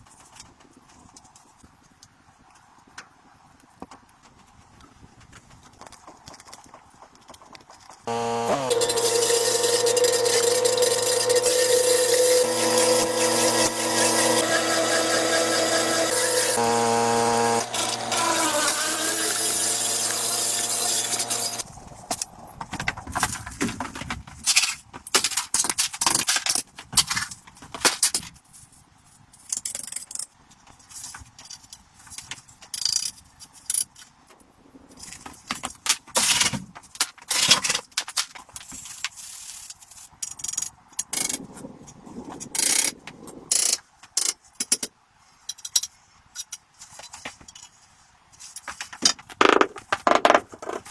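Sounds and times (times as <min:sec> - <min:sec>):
tools and wood being handled: 0:05.9 - 0:28.8, 0:44.1 - 0:50.9
power tool whining: 0:08.1 - 0:21.7.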